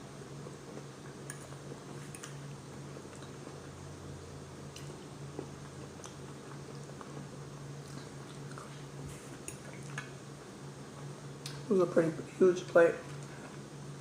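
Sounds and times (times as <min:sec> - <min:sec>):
steady low hum: 0:00.0 - 0:14.0
person chewing food: 0:00.7 - 0:03.8, 0:04.7 - 0:10.1.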